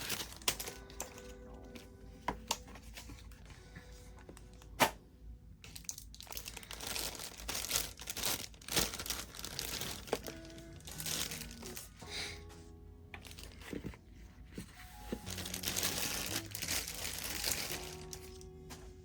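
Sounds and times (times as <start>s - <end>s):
plastic packaging crinkling: 0.0s - 4.7s, 5.6s - 12.0s, 13.2s - 14.0s, 14.6s - 18.7s.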